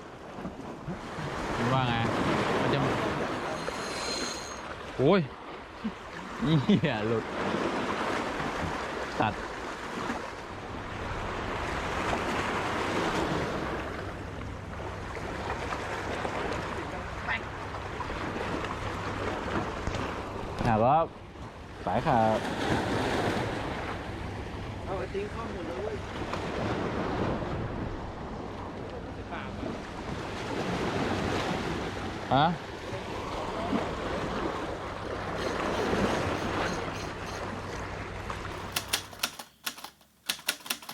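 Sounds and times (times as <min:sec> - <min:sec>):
sea waves: 0:00.0 - 0:38.7
wind: 0:00.0 - 0:40.9
sharp clicks: 0:35.4 - 0:37.5, 0:38.6 - 0:40.9.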